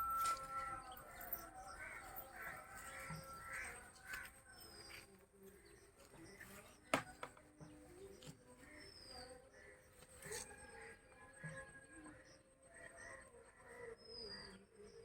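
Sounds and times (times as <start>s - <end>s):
crows cawing: 0.2s - 4.4s.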